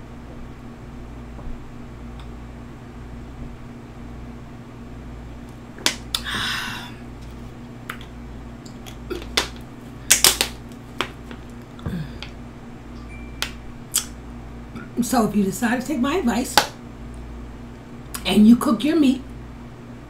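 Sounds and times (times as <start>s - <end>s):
steady low hum: 0.0s - 20.0s
breathy hiss: 6.2s - 7.0s.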